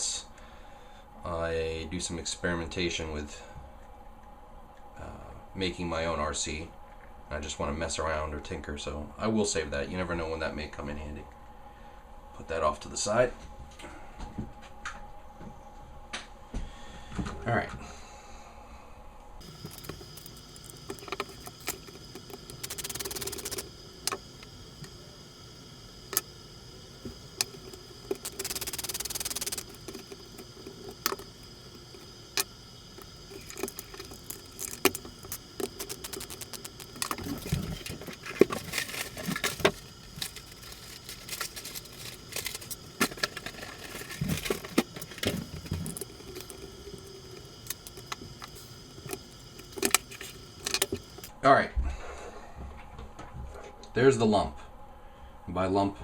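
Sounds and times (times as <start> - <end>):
hissing noise: 19.4 - 51.4
plastic and metal parts clicking: 32.3 - 46.9.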